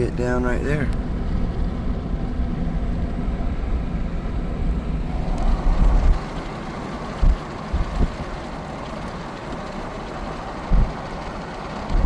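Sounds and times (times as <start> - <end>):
road and engine rumble: 0.0 - 12.0
short low thumps: 10.7 - 11.0.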